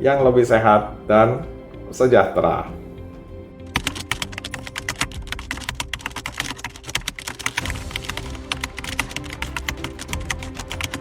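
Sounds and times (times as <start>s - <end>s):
soft background music: 0.0s - 11.0s
keyboard typing: 3.7s - 11.0s.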